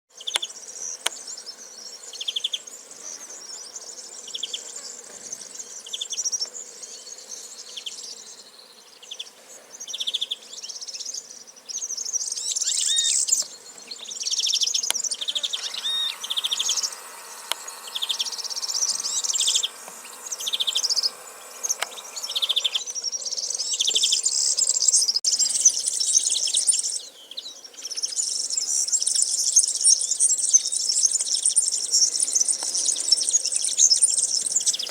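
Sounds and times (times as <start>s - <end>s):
chattering bird trills: 12.6s - 25.8s
high buzzy bird note: 14.3s - 25.6s.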